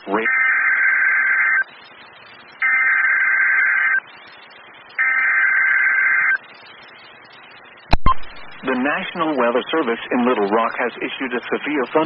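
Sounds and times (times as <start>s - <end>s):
modem-like data tone bursts: 2.6s - 4.0s, 4.9s - 6.4s.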